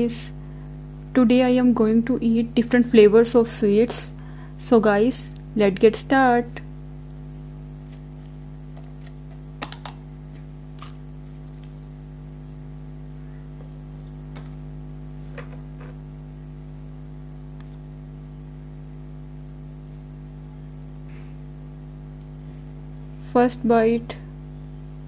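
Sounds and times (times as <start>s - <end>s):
electrical hum: 0.0s - 25.0s.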